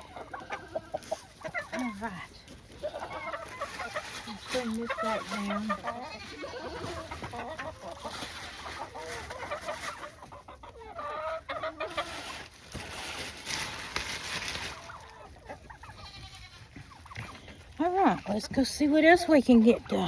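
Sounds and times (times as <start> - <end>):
chickens clucking: 0.0 - 20.0
rustling noise: 2.0 - 10.2, 11.9 - 15.3.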